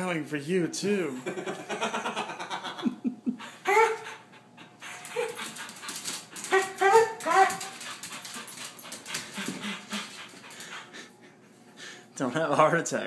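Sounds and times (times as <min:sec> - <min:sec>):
dog whining: 0:03.4 - 0:05.6, 0:06.4 - 0:07.8.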